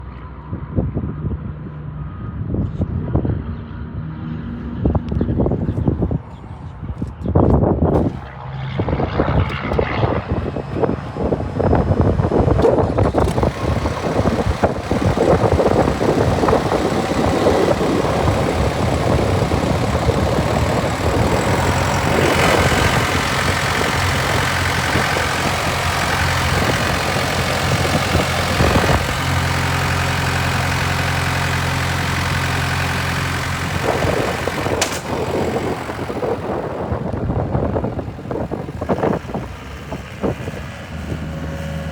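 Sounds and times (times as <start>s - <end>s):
loader engine running: 7.9s - 41.9s
irregular clatter: 9.0s - 37.3s.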